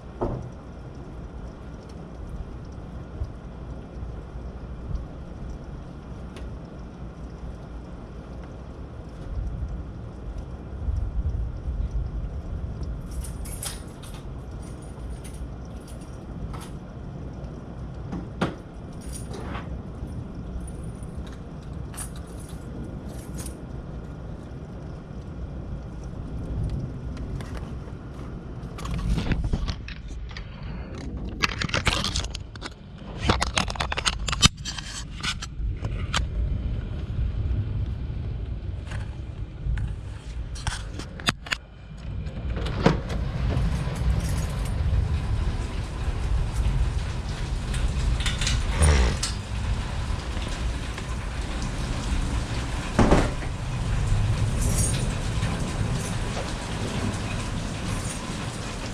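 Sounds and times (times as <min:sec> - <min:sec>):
rain hiss: 0:00.0 - 0:58.9
wind buffeting microphone: 0:35.1 - 0:58.9.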